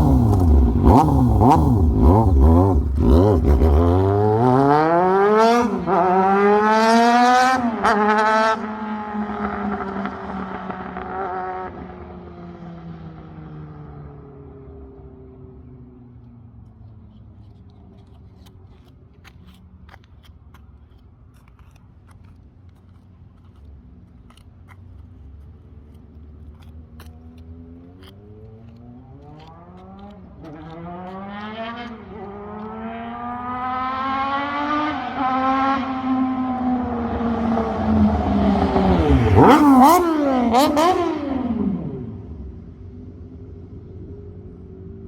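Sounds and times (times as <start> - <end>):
vehicle engine revving: 0.0 - 12.5, 24.3 - 42.7.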